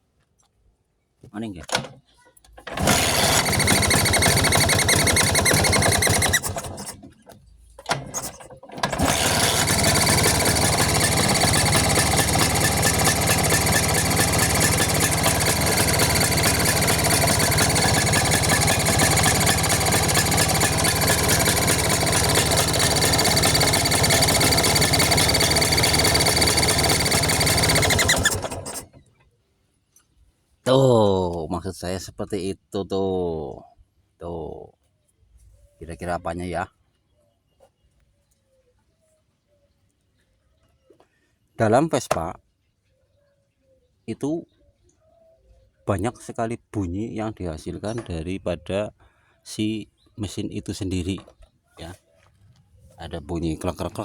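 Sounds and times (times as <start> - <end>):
scooter engine running: 2.7 - 7.0, 7.9 - 29.0, 53.6 - 54.0.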